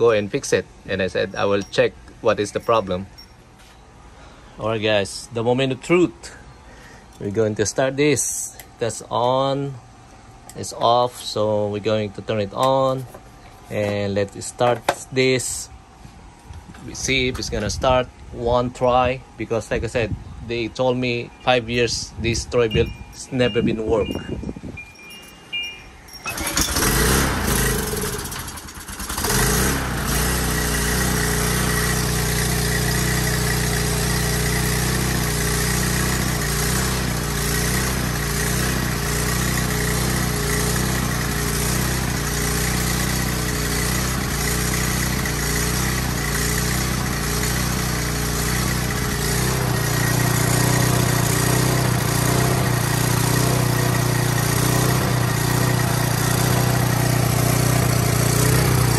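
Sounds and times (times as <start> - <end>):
recoil starter pull: 26.2 - 58.9
small engine running: 26.2 - 58.9.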